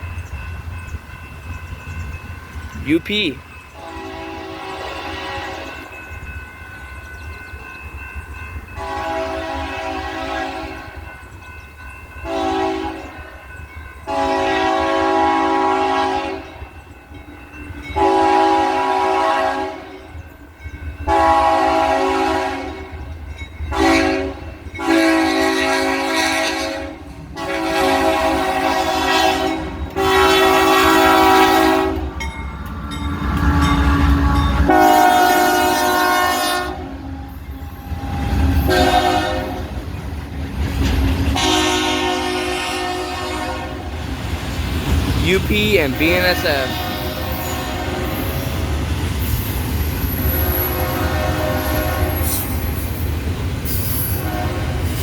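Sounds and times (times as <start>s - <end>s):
passing train rumble: 0.0s - 55.0s
locomotive air horn blasts: 3.8s - 5.8s, 8.8s - 11.0s, 12.3s - 13.4s, 14.1s - 16.6s, 18.0s - 20.0s, 21.1s - 22.9s, 23.7s - 32.1s, 33.5s - 37.3s, 38.0s - 39.7s, 41.3s - 43.9s, 45.7s - 48.4s, 50.2s - 52.6s, 54.1s - 55.0s.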